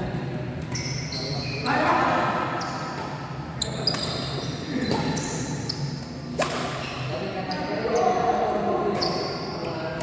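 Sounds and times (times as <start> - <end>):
shoes squeaking on court: 0.6 - 9.7
racket hitting shuttlecock: 6.4 - 6.8.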